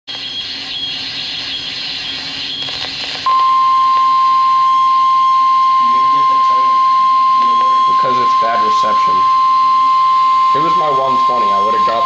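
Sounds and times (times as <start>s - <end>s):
radio static hiss: 2.0s - 3.3s, 5.8s - 12.0s
steady alarm tone: 3.2s - 12.0s.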